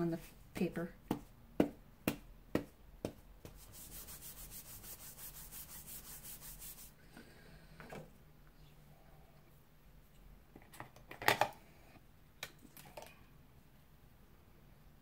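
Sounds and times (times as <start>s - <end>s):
pouch rubbing on paper: 3.5s - 6.9s.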